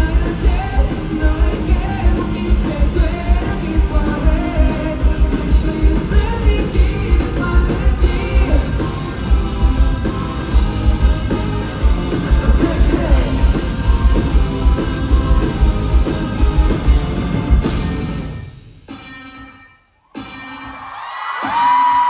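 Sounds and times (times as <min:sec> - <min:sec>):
person singing: 0:00.0 - 0:16.9
heavy drums: 0:00.0 - 0:19.5
live rock band playing: 0:00.0 - 0:20.9.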